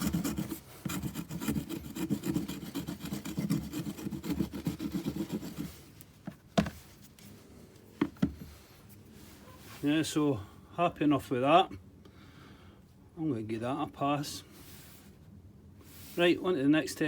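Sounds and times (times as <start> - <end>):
saw rasping on stick: 0.0 - 5.8.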